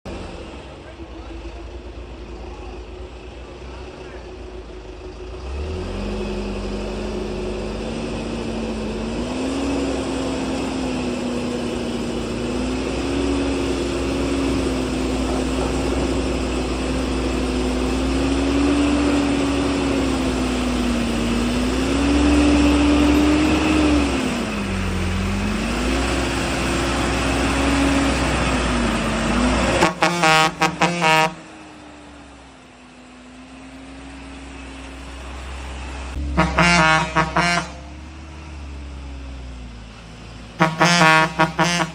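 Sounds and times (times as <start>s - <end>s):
road noise: 0.0s - 41.9s
truck engine: 0.0s - 41.9s
pulsing horn blasts: 29.7s - 31.4s, 36.2s - 38.0s, 40.6s - 41.9s.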